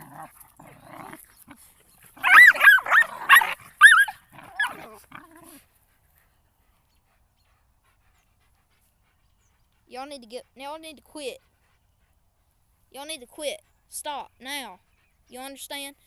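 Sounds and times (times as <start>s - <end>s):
dogs snarling and scuffling: 0.0s - 13.4s
dog yelping in pain: 2.2s - 5.6s.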